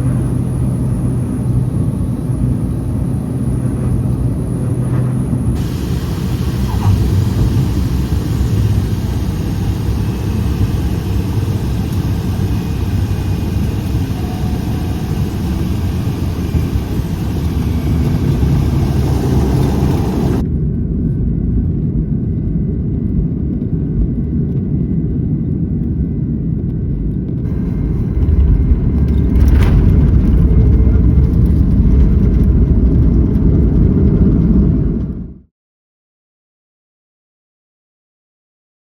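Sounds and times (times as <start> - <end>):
jet engines rumbling: 0.0 - 20.4, 27.3 - 35.4
turboprop engine roaring: 0.0 - 21.0, 26.6 - 35.5.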